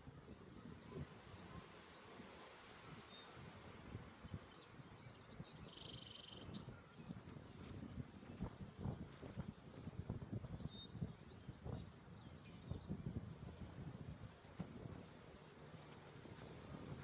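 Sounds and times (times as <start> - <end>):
low wind rumble: 3.4 - 17.0
bird whistle and buzzy trill: 4.6 - 6.6.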